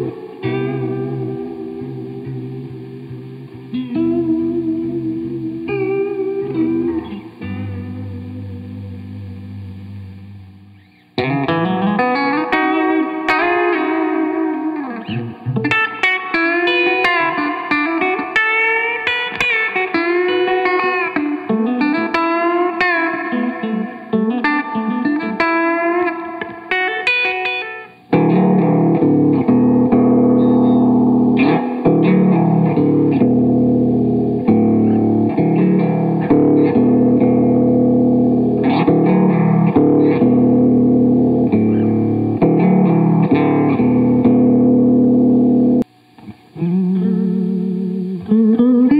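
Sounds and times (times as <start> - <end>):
electric guitar with chorus: 0.0 - 48.9.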